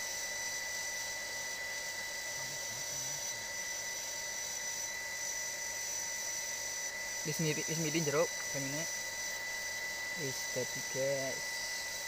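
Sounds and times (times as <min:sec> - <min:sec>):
water pump motor humming: 0:00.0 - 0:12.0.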